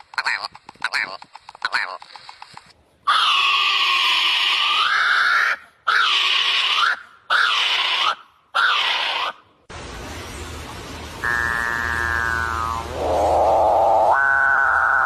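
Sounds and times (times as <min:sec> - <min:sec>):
bird screaming calls: 0:11.2 - 0:15.0.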